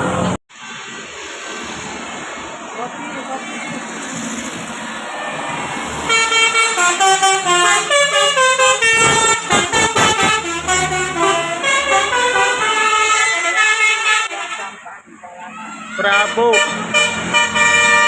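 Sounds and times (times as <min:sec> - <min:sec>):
road and traffic noise: 0:00.0 - 0:18.0
bus musical horn melody: 0:06.1 - 0:14.9, 0:16.0 - 0:18.0.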